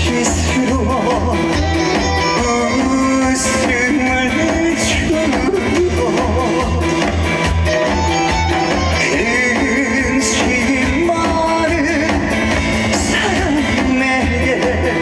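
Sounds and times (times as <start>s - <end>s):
instrumental music with steady beat: 0.0s - 15.0s.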